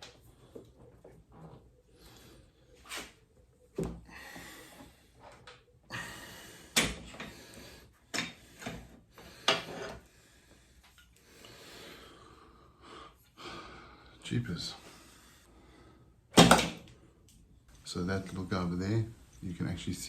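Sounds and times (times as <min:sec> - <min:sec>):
person breathing hard: 0:04.0 - 0:14.2, 0:14.8 - 0:16.3.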